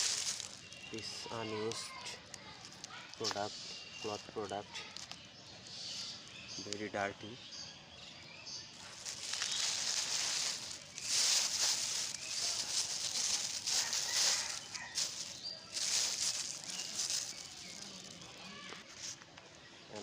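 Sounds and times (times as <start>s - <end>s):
plastic and cloth crinkling: 0.0s - 3.4s, 8.8s - 19.3s
faint bird chirps: 0.0s - 20.0s.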